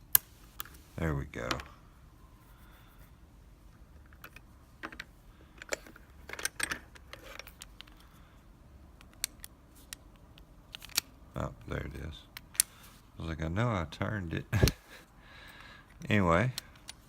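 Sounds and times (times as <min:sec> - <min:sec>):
padlock metallic clicks and rattles: 0:04.0 - 0:08.1, 0:09.0 - 0:11.2, 0:12.3 - 0:12.7, 0:16.0 - 0:17.0.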